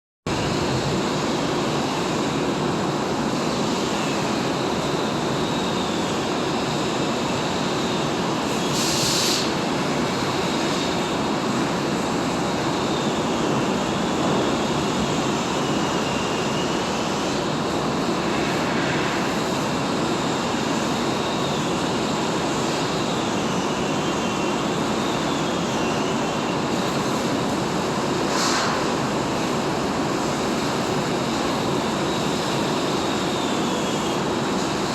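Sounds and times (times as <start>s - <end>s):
welding arc hissing: 8.5s - 9.9s.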